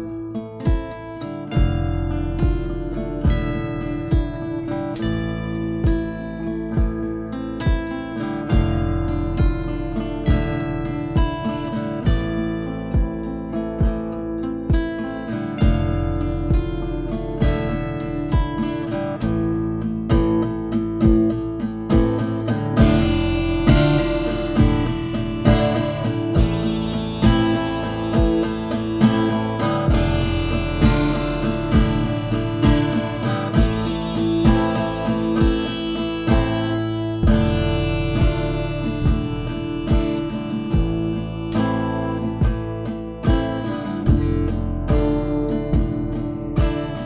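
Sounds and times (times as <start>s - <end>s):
strummed acoustic guitar: 0.0s - 47.0s
band music: 22.0s - 44.4s.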